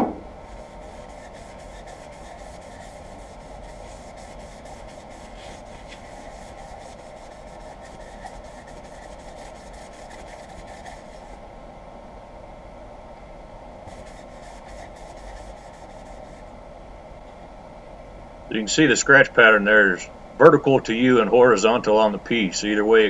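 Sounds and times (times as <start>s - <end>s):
single knock: 0.0s - 0.3s
steady machine hum: 0.0s - 23.0s
rubbing strokes on wood: 0.4s - 11.4s, 13.8s - 16.5s.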